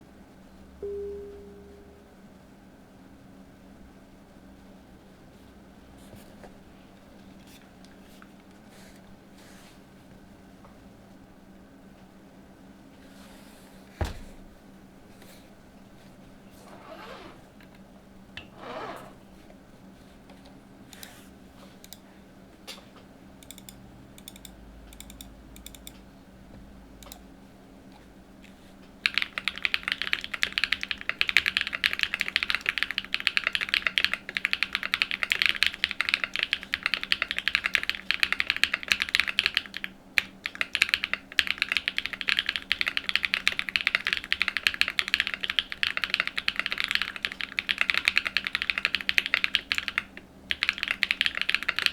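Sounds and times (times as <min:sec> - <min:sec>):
typing on mechanical keyboard: 0:23.4 - 0:26.0, 0:29.0 - 0:51.9.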